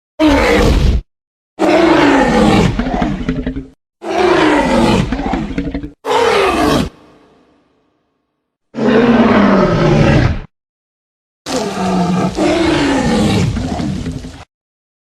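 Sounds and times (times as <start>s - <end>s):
dinosaur roars: 0.2s - 0.9s, 1.6s - 7.3s, 8.7s - 10.5s, 11.5s - 14.5s.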